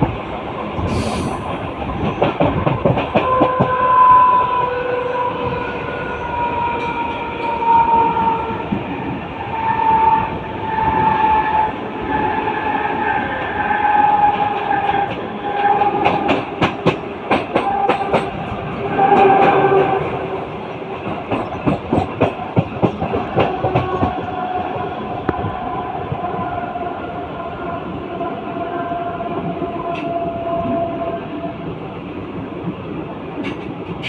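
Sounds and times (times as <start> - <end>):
train wheels clicking over rail joints: 0.8 - 3.8, 14.2 - 24.4, 33.4 - 34.0.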